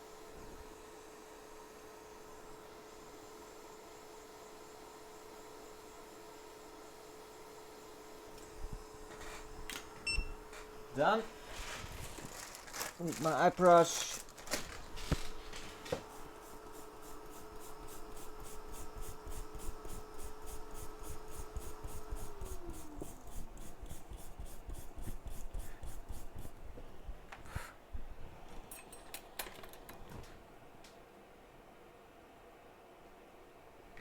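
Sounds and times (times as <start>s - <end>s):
brush scrubbing circuit board: 16.2s - 26.6s.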